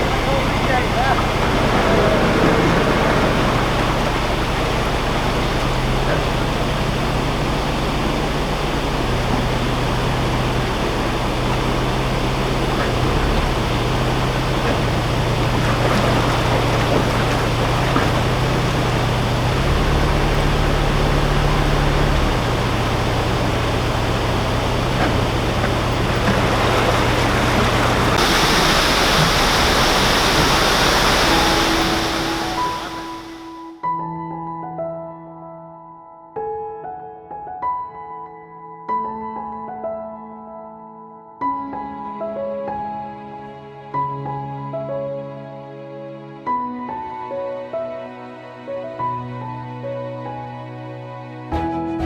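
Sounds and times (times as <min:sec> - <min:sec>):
water rushing and churning: 0:00.0 - 0:33.7
boat engine hum: 0:00.0 - 0:33.8.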